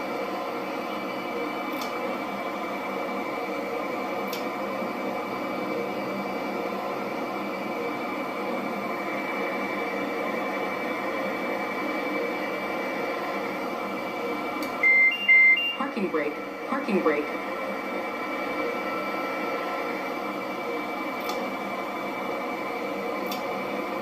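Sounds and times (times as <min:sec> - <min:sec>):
jet engine noise: 0:00.0 - 0:24.0
thin high whine: 0:09.2 - 0:23.0.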